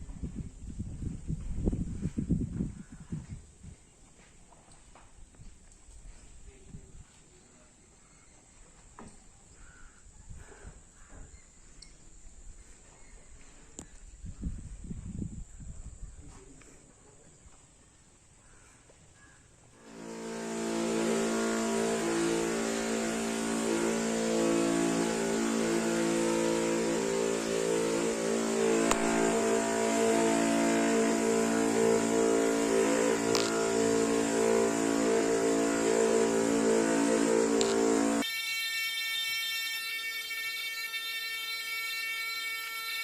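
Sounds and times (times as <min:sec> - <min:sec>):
motor running: 0:19.9 - 0:43.0.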